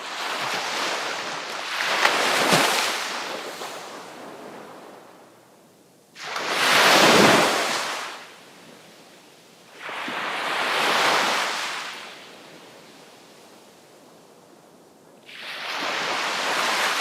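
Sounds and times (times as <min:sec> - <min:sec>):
sea waves crashing on shore: 0:00.0 - 0:05.3, 0:06.2 - 0:08.5, 0:09.7 - 0:12.6, 0:15.2 - 0:17.0.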